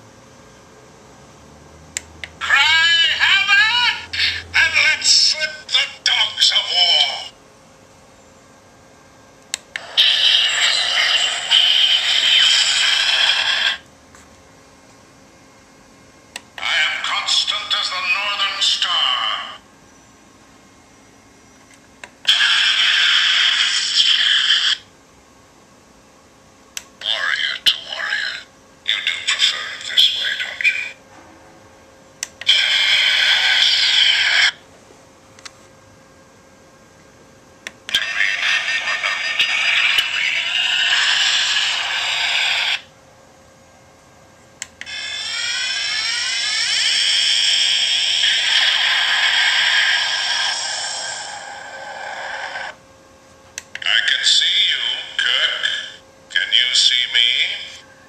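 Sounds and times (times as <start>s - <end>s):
toy hissing effect: 9.8s - 13.8s, 32.5s - 34.6s, 38.0s - 42.9s, 44.8s - 52.8s
electronic hissing noise: 44.8s - 52.8s.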